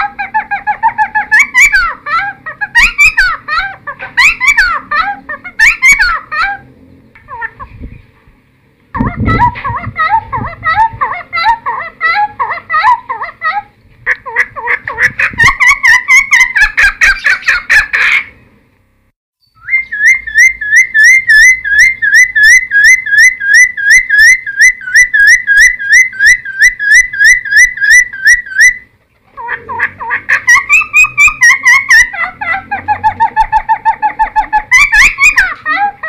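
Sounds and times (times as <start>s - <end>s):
bird singing whistled phrases: 19.4s - 28.8s.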